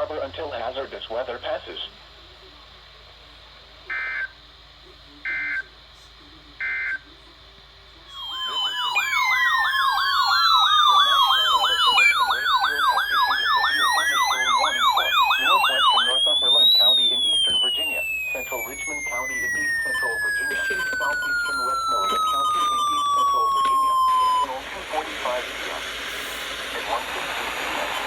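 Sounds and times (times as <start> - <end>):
electronic alert sirens: 8.1 - 27.1
electronic data bursts: 8.1 - 27.9.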